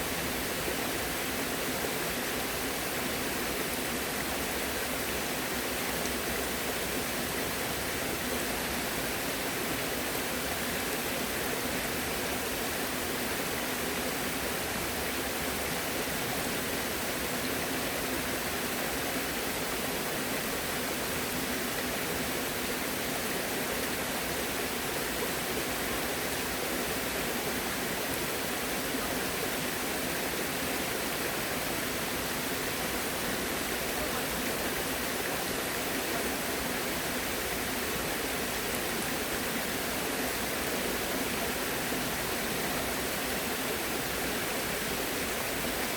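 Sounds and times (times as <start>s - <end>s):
water rushing: 0.0s - 45.9s.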